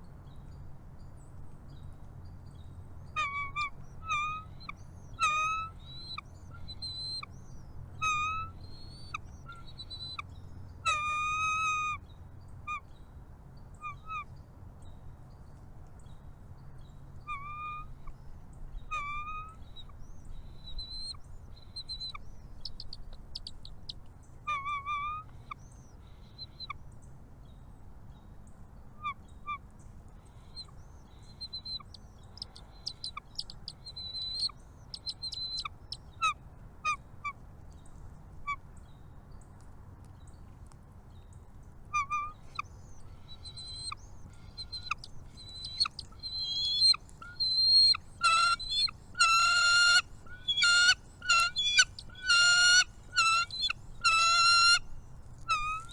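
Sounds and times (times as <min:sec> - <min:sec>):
loud nasal bird calls: 0:03.1 - 0:12.0, 0:17.3 - 0:26.8, 0:30.2 - 0:37.0, 0:41.9 - 0:55.9
birds chirping and whistling: 0:03.2 - 0:07.3, 0:20.6 - 0:23.9, 0:30.6 - 0:36.1, 0:42.0 - 0:54.8.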